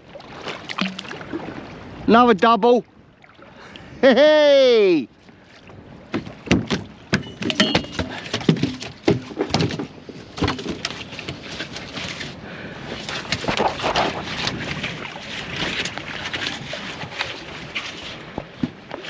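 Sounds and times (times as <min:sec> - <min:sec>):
water noise: 0:00.0 - 0:19.0
wind: 0:00.0 - 0:19.0
knocks and clatter in boat: 0:05.6 - 0:19.0.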